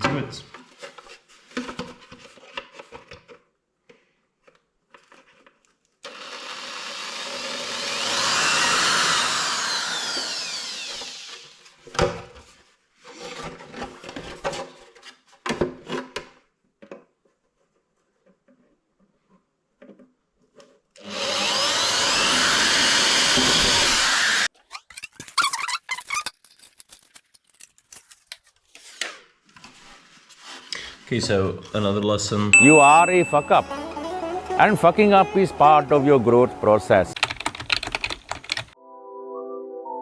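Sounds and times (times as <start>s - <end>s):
electric drill boring: 6.0s - 11.7s, 21.0s - 25.4s
handling knocks and clicks: 24.6s - 28.7s.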